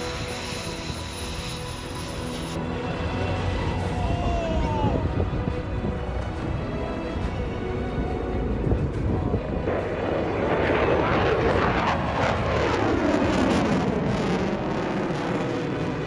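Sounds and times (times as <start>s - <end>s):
jet aircraft flying past: 8.4s - 16.0s.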